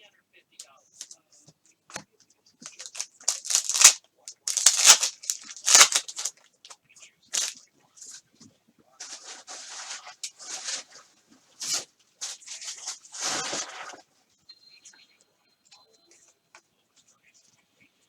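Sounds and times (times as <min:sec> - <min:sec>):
wrapper tearing and crinkling: 0:02.6 - 0:06.3, 0:07.4 - 0:07.6.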